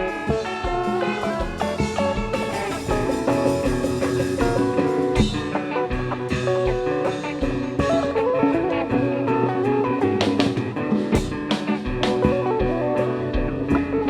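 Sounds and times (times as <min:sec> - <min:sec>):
bass: 0:00.0 - 0:14.0
drum kit: 0:00.0 - 0:14.0
guitar lines: 0:00.0 - 0:14.0.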